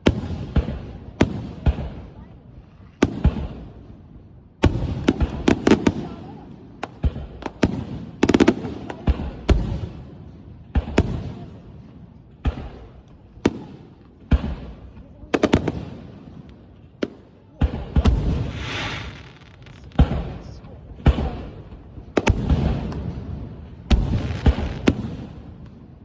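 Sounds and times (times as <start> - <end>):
fireworks bursting with bangs: 0.0 - 26.0.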